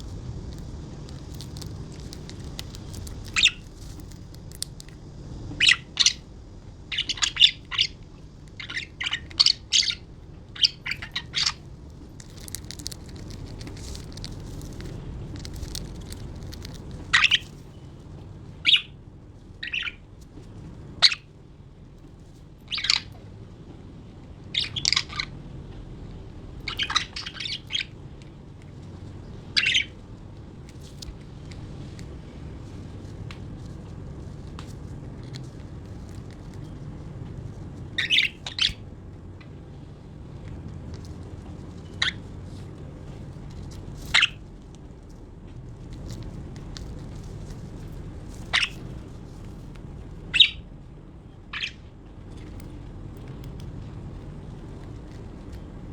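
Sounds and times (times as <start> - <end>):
low steady hum: 0.0 - 55.9
budgerigars chirping: 2.2 - 3.7, 5.6 - 6.2, 6.9 - 8.0, 8.6 - 11.6, 15.4 - 17.6, 18.6 - 19.0, 19.6 - 20.0, 21.0 - 21.3, 22.7 - 23.1, 24.6 - 25.3, 26.7 - 27.9, 29.4 - 30.0, 37.9 - 38.8, 41.9 - 42.2, 44.1 - 44.4, 48.4 - 49.0, 50.3 - 50.6, 51.5 - 51.8.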